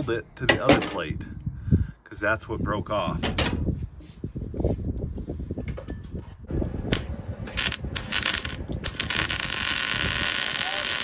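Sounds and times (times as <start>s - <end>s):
welding arc crackling: 6.9s - 11.0s.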